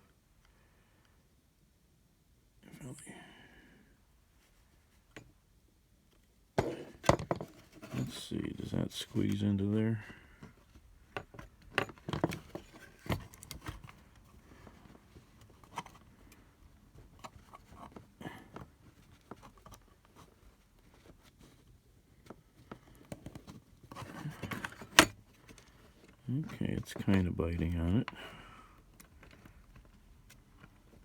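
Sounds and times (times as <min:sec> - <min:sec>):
plastic parts clicking and scraping: 0:10.5 - 0:16.4, 0:22.2 - 0:28.2, 0:28.8 - 0:31.0.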